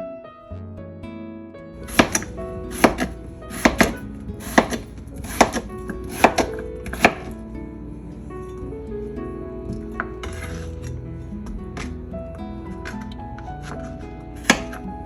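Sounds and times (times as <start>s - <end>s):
knife chopping on cutting board: 1.8s - 7.4s, 10.2s - 10.7s, 13.6s - 14.8s.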